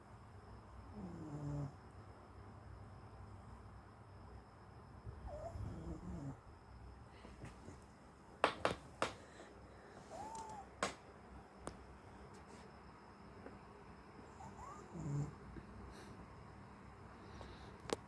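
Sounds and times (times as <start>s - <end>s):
pet snoring: 1.0s - 1.8s, 5.3s - 6.4s, 14.4s - 15.4s.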